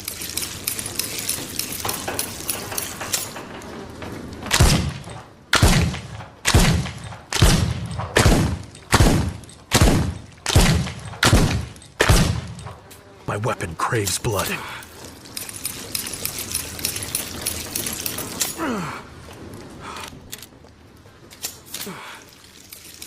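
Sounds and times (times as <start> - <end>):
pistol shots: 4.5 - 12.6.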